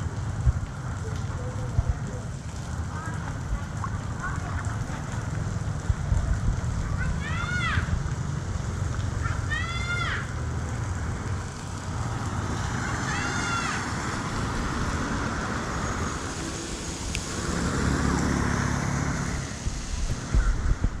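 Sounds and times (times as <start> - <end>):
road vehicle passing: 2.4 - 21.0
outdoor rushing noise: 4.8 - 21.0.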